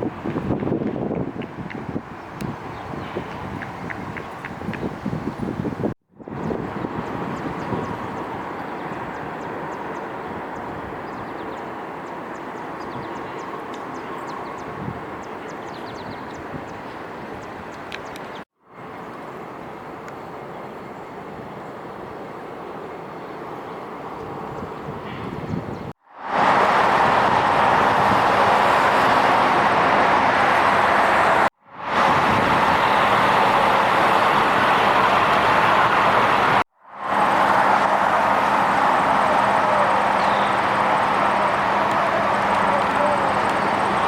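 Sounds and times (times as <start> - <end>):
traffic noise: 0.0 - 44.0
faint engine hum: 32.8 - 44.0.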